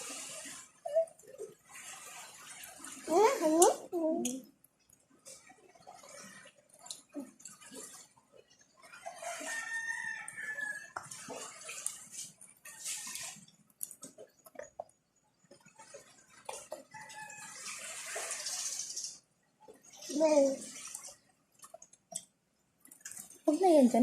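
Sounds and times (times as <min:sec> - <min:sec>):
rooster crowing: 0:09.2 - 0:11.0.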